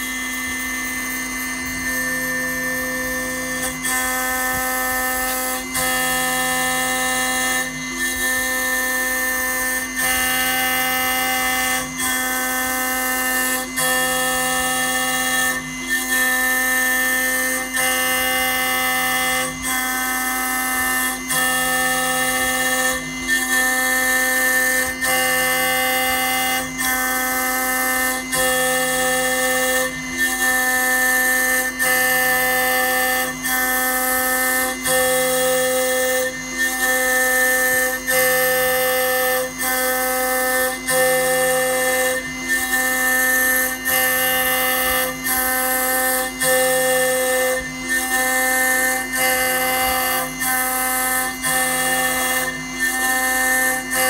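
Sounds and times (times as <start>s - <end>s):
milling machine spindle whine: 0.0s - 54.0s.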